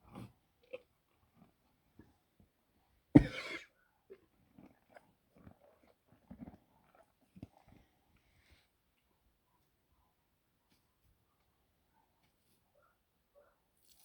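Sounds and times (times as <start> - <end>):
horse coughing: 3.2 - 3.8.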